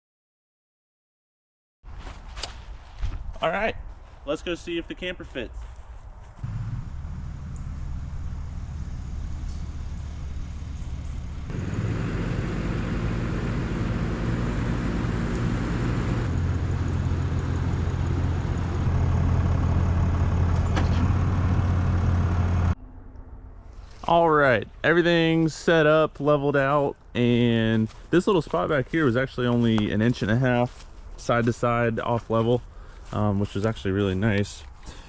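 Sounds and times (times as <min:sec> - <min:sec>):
truck engine running: 0:06.5 - 0:22.8.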